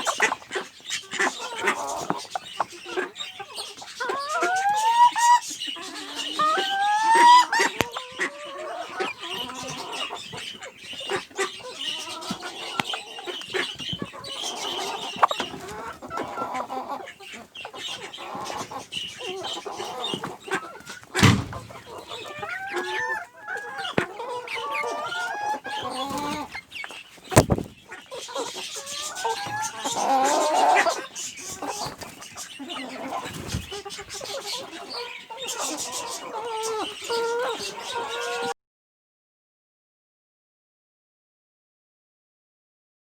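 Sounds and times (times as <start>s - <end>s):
chickens clucking: 0.0s - 38.6s
loud sudden knocks: 21.2s - 22.2s.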